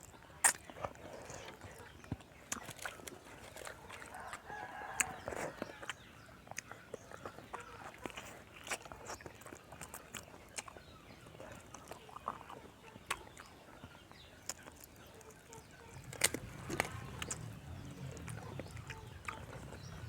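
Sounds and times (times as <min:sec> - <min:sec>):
chewing and wet smacks: 0:00.0 - 0:20.0.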